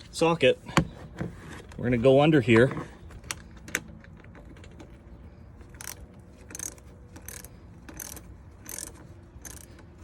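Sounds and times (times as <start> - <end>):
ratchet wrench clicking: 5.7 - 9.9.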